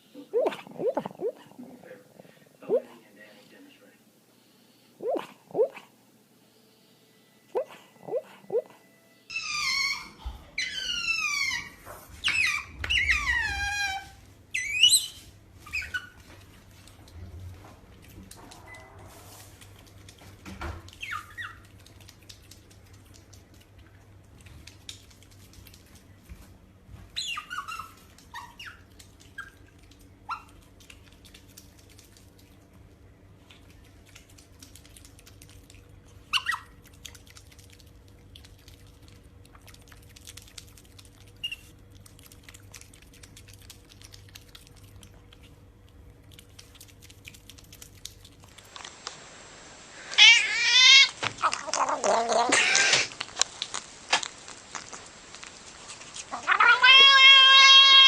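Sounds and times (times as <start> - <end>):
small animal squeaking: 0.2 - 1.5, 5.0 - 5.8, 7.6 - 16.2, 20.9 - 21.7, 27.2 - 29.6, 36.3 - 36.8, 41.3 - 41.8, 50.2 - 53.2
steady low hum: 27.9 - 50.2.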